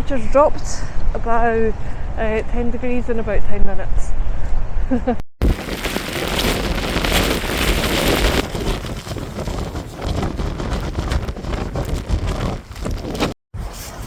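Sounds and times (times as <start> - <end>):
heavy rain: 5.4 - 9.2
wind buffeting microphone: 5.4 - 13.4.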